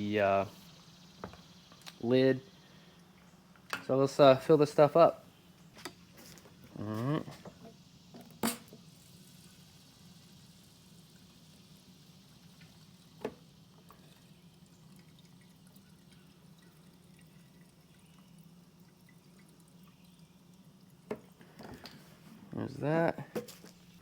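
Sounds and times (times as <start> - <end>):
liquid pouring into tank: 8.4 - 22.4.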